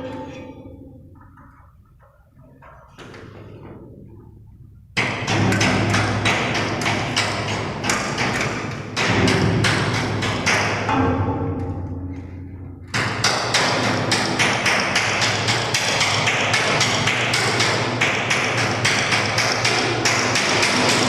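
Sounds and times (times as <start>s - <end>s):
steady low hum: 0.0s - 15.0s
rhythmic knocking: 0.0s - 21.0s.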